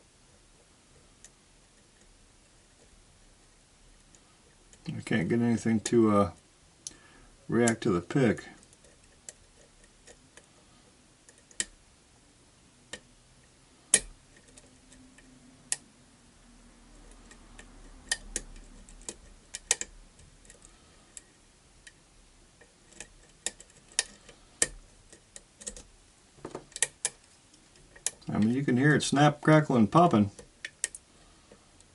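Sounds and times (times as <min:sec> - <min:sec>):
lock pick clicking on pins: 0:13.8 - 0:15.9, 0:17.0 - 0:22.0, 0:22.6 - 0:25.9, 0:26.6 - 0:28.3.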